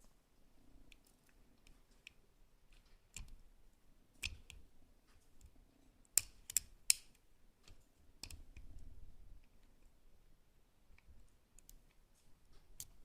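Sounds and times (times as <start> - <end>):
lock pick clicking in padlock: 6.1 - 7.2.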